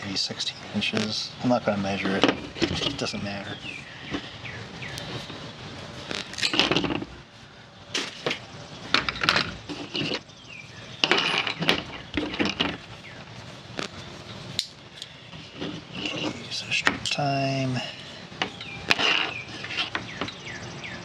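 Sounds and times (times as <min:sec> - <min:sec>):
small metal objects clinking: 0:11.0 - 0:12.8.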